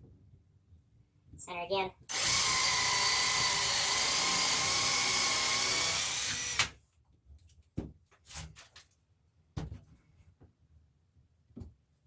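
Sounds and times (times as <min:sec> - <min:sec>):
power drill boring into wood: 0:02.1 - 0:06.8.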